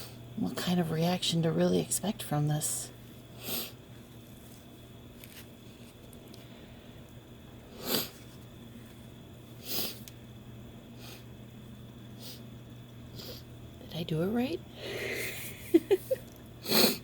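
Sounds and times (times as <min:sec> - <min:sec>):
sharp sniffs through the nose: 0:07.7 - 0:08.2.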